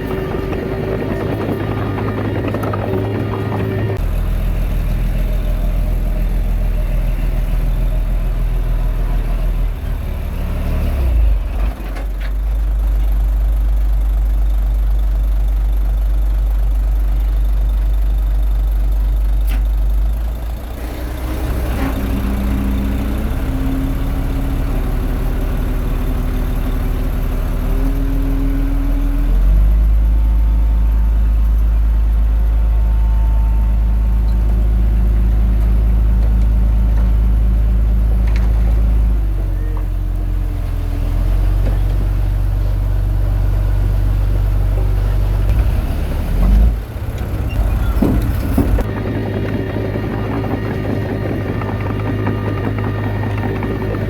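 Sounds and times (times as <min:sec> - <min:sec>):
bulldozer diesel engine running: 0:00.0 - 0:54.0.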